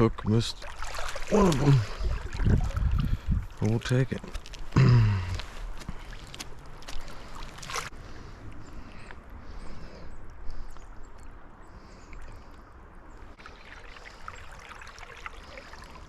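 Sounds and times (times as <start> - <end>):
creek water running: 0.0 - 8.0, 13.3 - 16.0
sharp splashes or knocks: 0.6 - 3.0.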